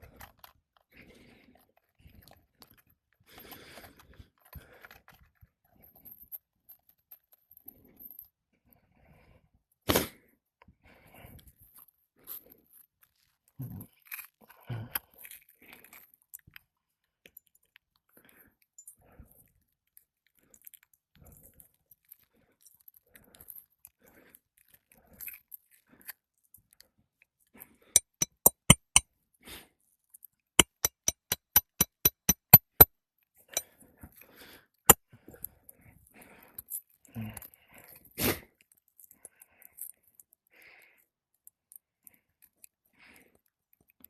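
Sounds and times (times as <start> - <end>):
sharp knock: 28.0 - 29.0, 30.6 - 32.9.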